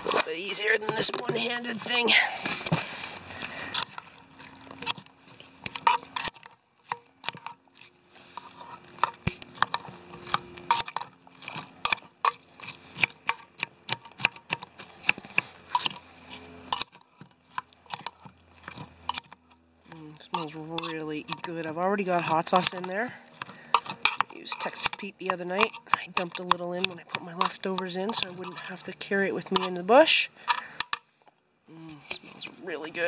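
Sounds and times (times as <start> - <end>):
spork clinking and scraping in metal cup: 17.9 - 30.6.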